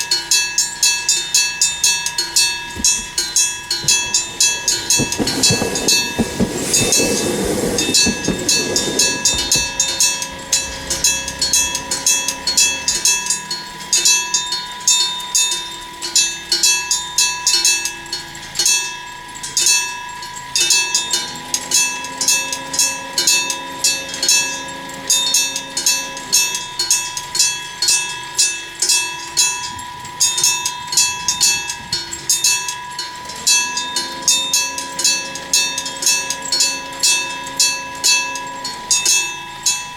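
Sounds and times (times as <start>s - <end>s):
level-crossing bell ringing: 0.0s - 39.9s
train rumbling and clattering past: 1.5s - 13.9s, 20.7s - 39.9s.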